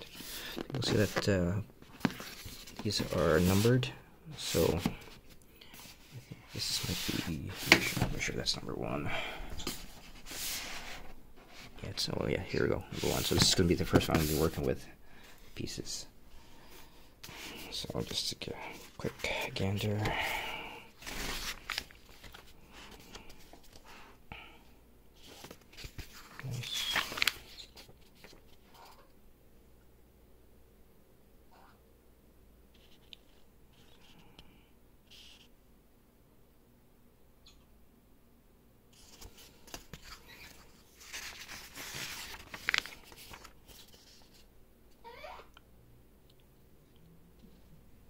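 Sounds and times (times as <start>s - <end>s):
rustling of handled objects: 0.0s - 16.0s, 38.9s - 44.5s.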